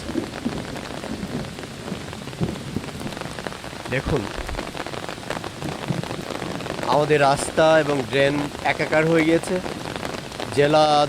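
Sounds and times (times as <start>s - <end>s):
rain falling on ground and water: 0.0s - 11.0s.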